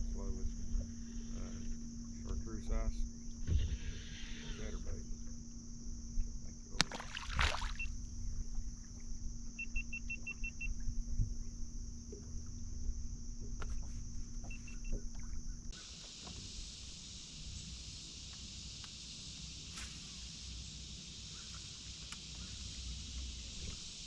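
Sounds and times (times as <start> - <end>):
steady electric hum: 0.0 - 24.0
steady high hiss: 15.7 - 24.0.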